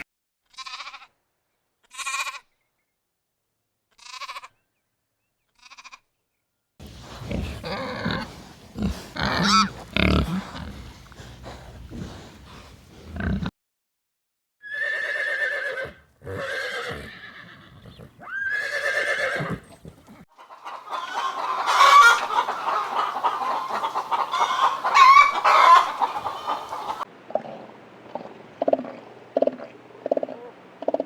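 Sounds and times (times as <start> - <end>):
overlapping calls and clucks: 6.8 - 13.4, 19.2 - 27.1
drawn-out farm animal calls: 6.8 - 13.5, 14.7 - 27.0.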